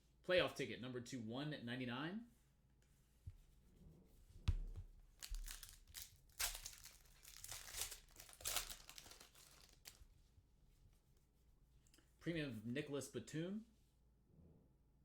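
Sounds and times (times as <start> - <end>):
plastic packaging crinkling: 5.1 - 10.1.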